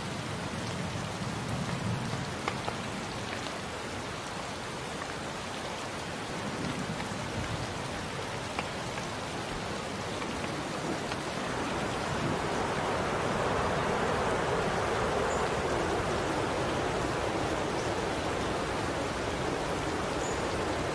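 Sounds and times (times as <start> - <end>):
rain drops ticking on a surface: 0.0 - 20.9
rain rushing hiss: 0.0 - 20.9.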